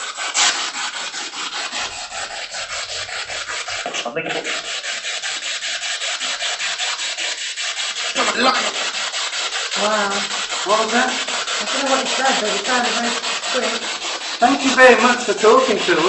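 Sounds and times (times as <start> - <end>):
choppy radio static: 14.4 - 16.0.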